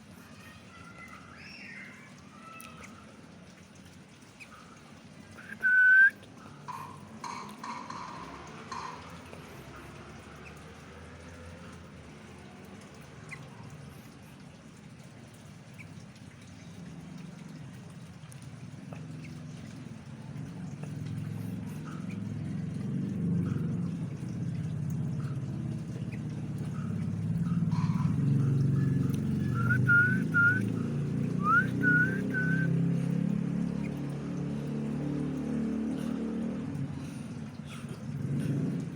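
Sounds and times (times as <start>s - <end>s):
pet bird chirping and whistling: 5.4s - 6.1s, 29.4s - 30.7s, 31.4s - 32.7s.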